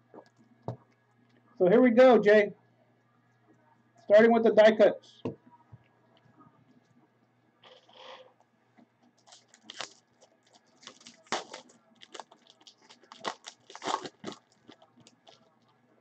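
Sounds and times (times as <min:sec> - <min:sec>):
card pack wrapper tearing: 0:09.2 - 0:15.4.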